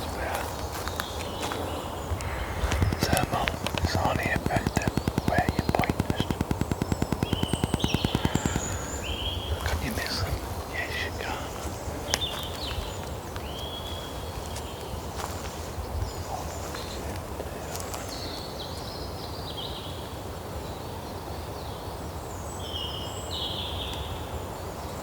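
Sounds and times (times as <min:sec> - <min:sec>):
faint clicks: 0:00.0 - 0:13.8
birds whistling calls: 0:00.0 - 0:19.2.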